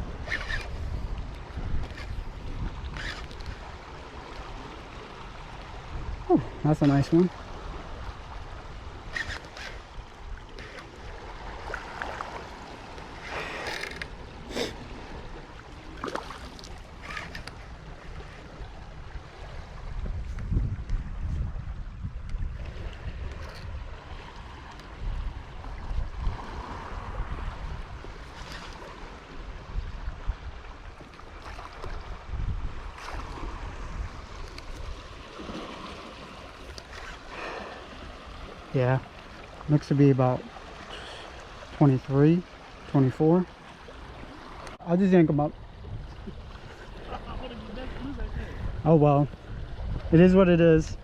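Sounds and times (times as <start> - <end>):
wind buffeting microphone: 0.0 - 4.7, 16.7 - 35.8, 45.3 - 51.0
rushing water: 0.0 - 51.0.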